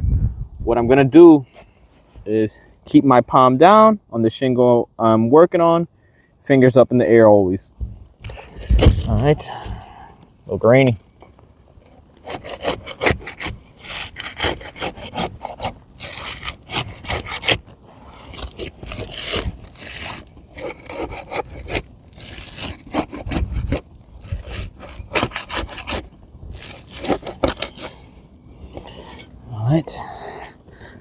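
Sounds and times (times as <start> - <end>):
pry bar scraping under shingle: 7.7 - 31.0
gritty rasp of shingle granules: 8.2 - 31.0.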